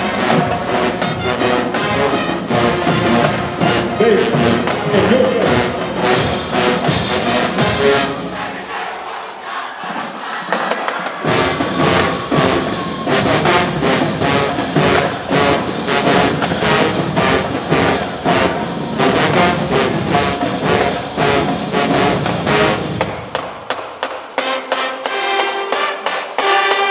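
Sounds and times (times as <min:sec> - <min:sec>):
drumline hits: 0:00.0 - 0:09.2, 0:09.8 - 0:26.9
brass trombones and trumpets: 0:00.0 - 0:09.6, 0:11.2 - 0:23.4, 0:24.4 - 0:26.9.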